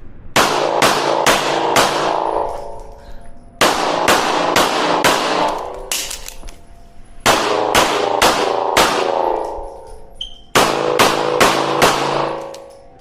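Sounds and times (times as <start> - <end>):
rapid gunshots: 0.4 - 2.4, 3.6 - 5.6, 7.3 - 9.4, 10.6 - 12.4
steel targets ringing: 0.4 - 6.4, 7.1 - 13.0.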